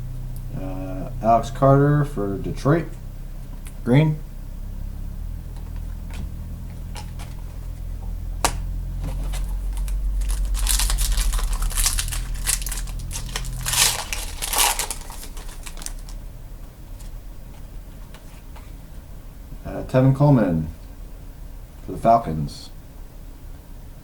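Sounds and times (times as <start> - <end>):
steady low hum: 0.0 - 24.0
foil wrapper crinkling and tearing: 9.3 - 16.2.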